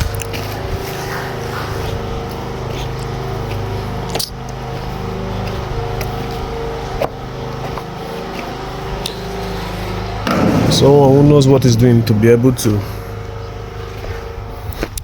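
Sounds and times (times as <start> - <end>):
engine droning steadily: 0.0 - 15.0
sharp knocks: 10.3 - 11.8.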